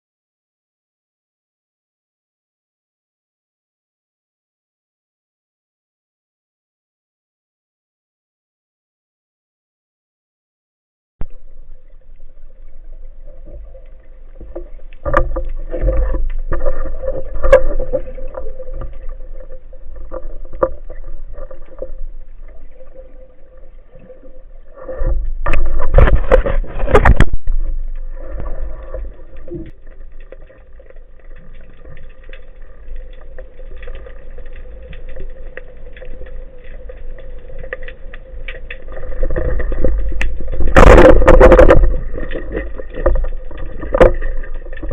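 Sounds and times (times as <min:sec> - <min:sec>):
sea water sloshing and rushing: 0:11.2 - 0:44.9.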